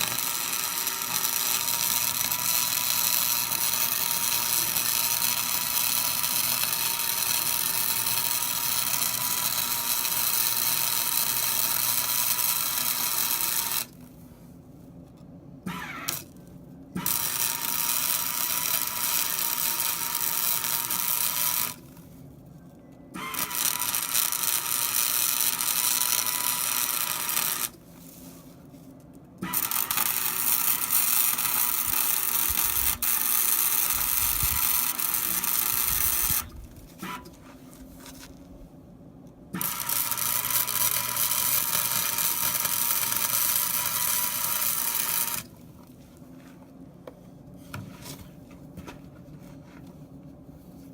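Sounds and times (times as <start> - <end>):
welding arc crackling: 0.0 - 13.9, 17.0 - 21.8, 23.3 - 27.8, 29.5 - 36.5, 39.6 - 45.5.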